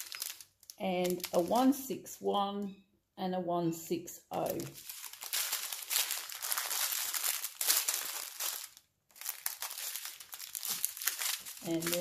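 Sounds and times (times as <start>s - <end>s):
small plastic bags crinkling: 0.0s - 1.8s, 4.3s - 12.0s.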